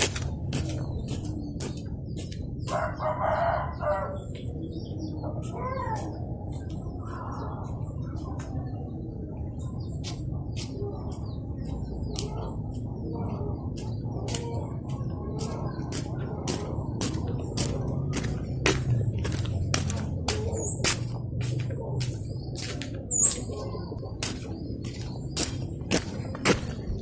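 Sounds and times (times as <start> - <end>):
footsteps walking: 0.0 - 3.0, 10.0 - 27.0
chickens clucking: 0.4 - 27.0
rooster crowing: 2.7 - 4.3.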